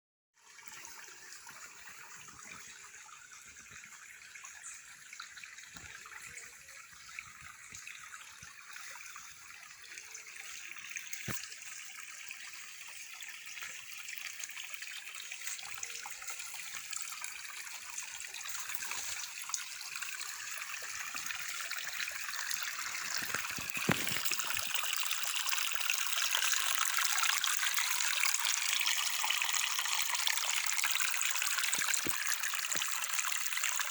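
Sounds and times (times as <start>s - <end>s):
water trickling and splashing: 0.4s - 33.9s.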